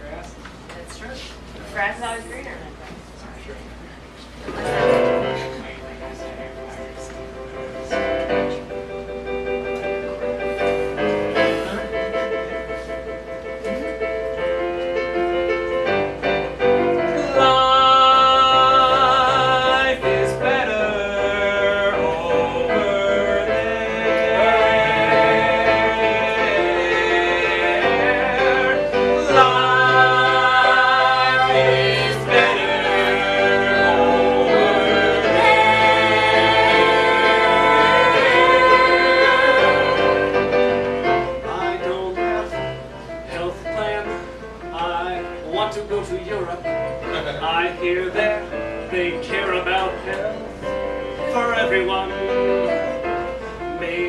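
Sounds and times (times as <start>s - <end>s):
instrumental accompaniment: 4.5s - 54.0s
person singing with vibrato: 17.0s - 40.8s.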